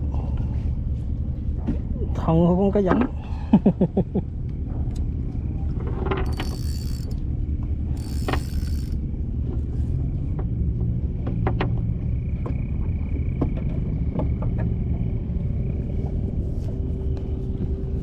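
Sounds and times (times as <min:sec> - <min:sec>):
low engine rumble: 0:00.0 - 0:18.0
small clicks: 0:06.1 - 0:07.2, 0:08.0 - 0:09.0.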